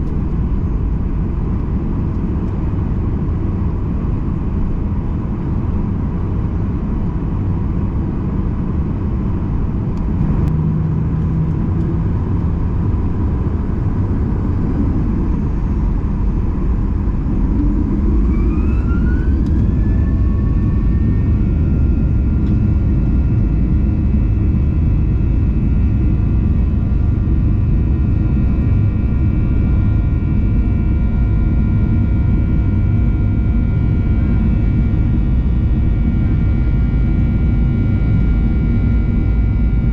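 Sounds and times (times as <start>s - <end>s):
jet engines from inside cabin: 0.0s - 39.9s
engine whine spooling up: 8.7s - 39.9s.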